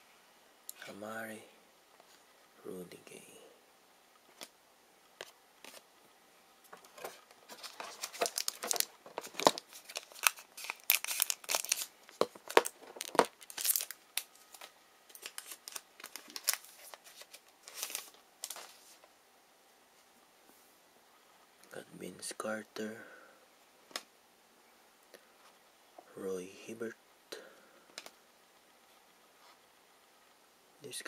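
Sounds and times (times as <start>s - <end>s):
wrapper tearing and crinkling: 7.5s - 19.0s.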